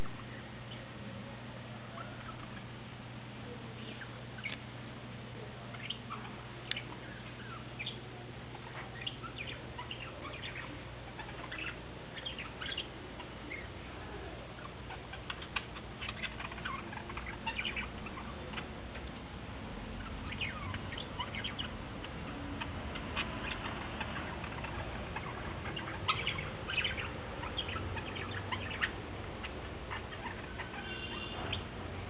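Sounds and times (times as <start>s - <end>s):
low steady hum: 0.0s - 32.0s
small cage birds chirping: 0.0s - 32.0s.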